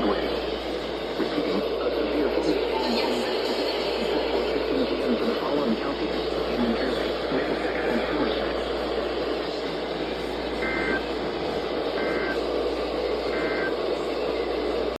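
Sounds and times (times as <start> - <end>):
radio static hiss: 0.0 - 15.0
two-tone digital data bursts: 10.6 - 11.2, 11.9 - 12.4, 13.3 - 13.8.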